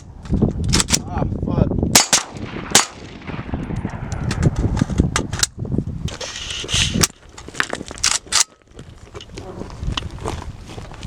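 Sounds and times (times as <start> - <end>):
wind rumbling on microphone: 0.0 - 11.0
gunshots: 2.0 - 5.4.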